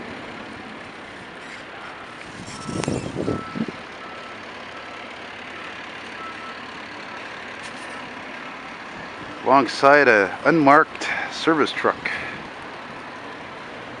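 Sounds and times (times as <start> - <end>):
street traffic noise: 0.0 - 14.0
vehicle reversing beeper: 1.8 - 7.3.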